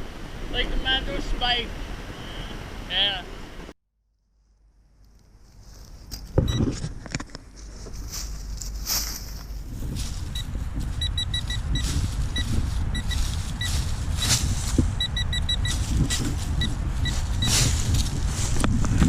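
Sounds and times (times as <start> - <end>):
footsteps in leaf litter: 5.4 - 6.4, 7.4 - 11.0, 11.6 - 15.0, 15.7 - 19.0
low microphone rumble: 6.3 - 19.0
metal detector beeps: 6.4 - 6.7, 10.3 - 14.3, 15.0 - 17.7.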